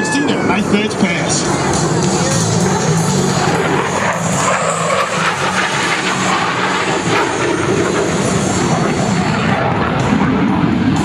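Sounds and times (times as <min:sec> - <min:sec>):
jet flying past: 0:00.0 - 0:11.0.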